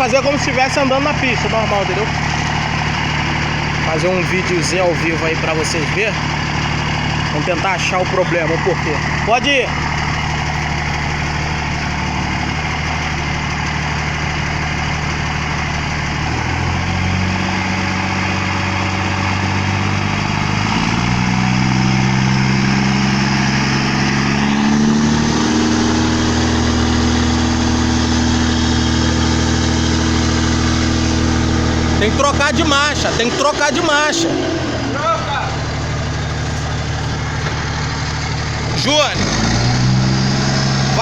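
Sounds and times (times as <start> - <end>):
diesel truck engine running: 0.0 - 41.0.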